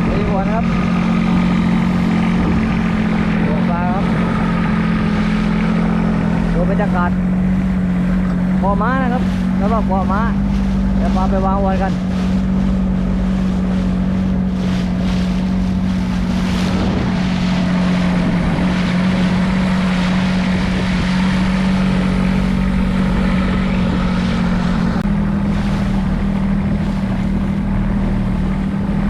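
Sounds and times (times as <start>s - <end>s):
boat engine droning: 0.0s - 29.0s
water rushing past: 0.0s - 29.0s
wind on microphone: 0.0s - 29.0s.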